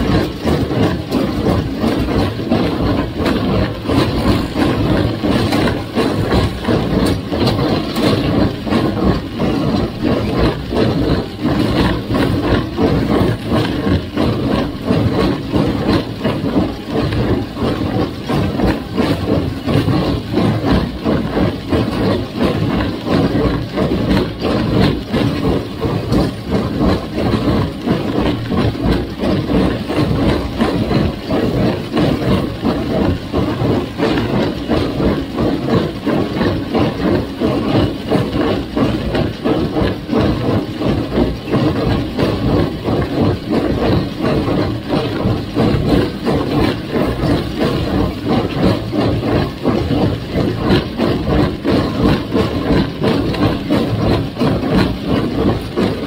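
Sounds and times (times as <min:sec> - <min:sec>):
tractor engine running: 0:00.0 - 0:56.0.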